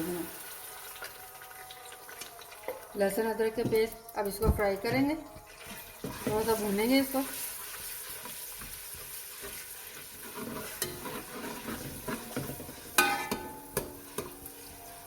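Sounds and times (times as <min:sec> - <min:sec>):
paste sizzling in hot oil: 0:05.6 - 0:15.0
spoon clinking against pot: 0:10.5 - 0:14.6.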